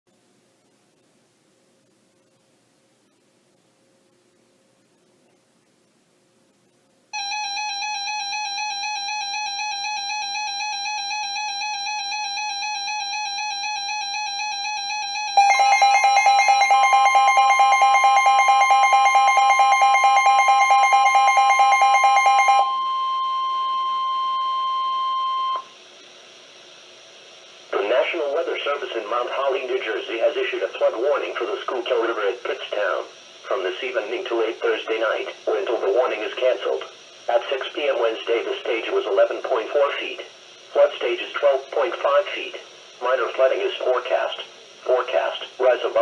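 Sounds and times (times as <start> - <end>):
steady warning tone: 7.2 - 25.8
warbling electronic alarm: 7.2 - 25.8.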